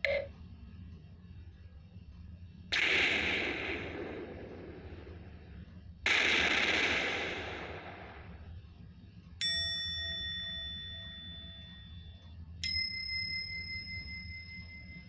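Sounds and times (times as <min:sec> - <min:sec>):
bell-like ding: 0:09.4 - 0:15.0.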